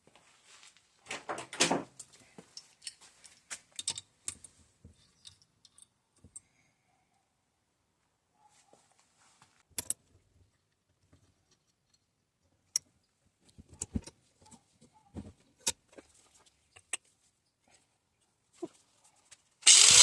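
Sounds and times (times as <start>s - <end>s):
metal tools clicking and clinking: 2.6s - 6.4s.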